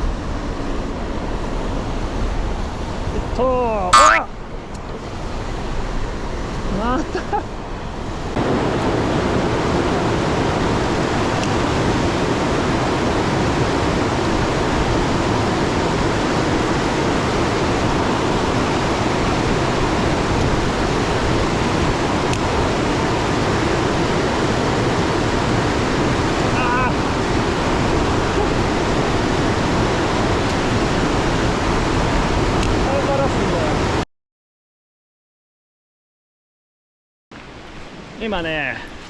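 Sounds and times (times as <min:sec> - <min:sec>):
mountain stream rushing: 0:07.6 - 0:34.0, 0:37.4 - 0:39.0.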